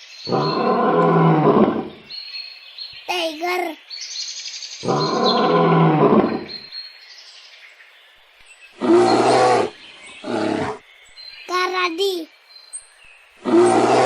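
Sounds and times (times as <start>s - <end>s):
tiger roaring: 0.3s - 2.1s, 4.8s - 6.6s, 8.8s - 10.8s, 13.4s - 14.0s.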